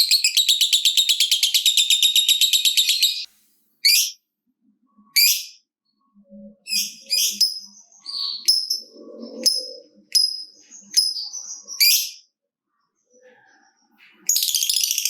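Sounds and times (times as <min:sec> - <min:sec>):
bird chirping and clicking: 0:00.0 - 0:04.2, 0:06.7 - 0:08.9, 0:09.5 - 0:12.2, 0:14.2 - 0:15.0.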